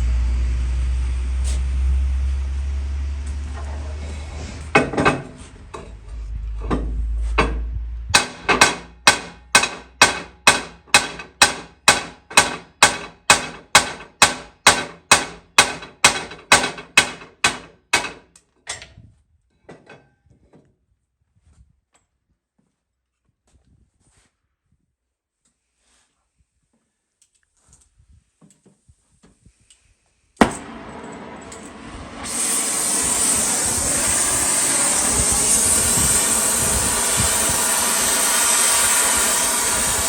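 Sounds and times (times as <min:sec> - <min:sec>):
low engine hum: 0:00.0 - 0:08.2
hammer blows: 0:06.7 - 0:18.2, 0:30.4 - 0:40.0.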